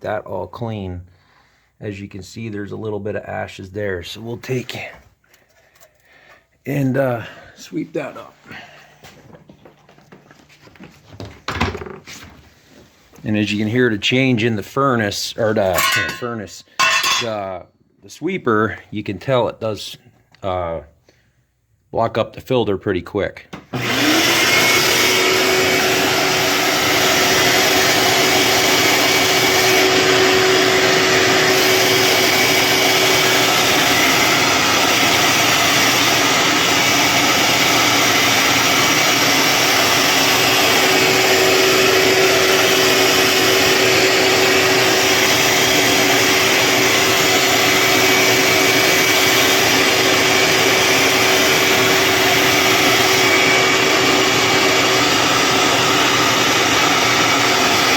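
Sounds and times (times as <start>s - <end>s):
shop vacuum running: 6.7s - 17.4s, 23.5s - 57.9s.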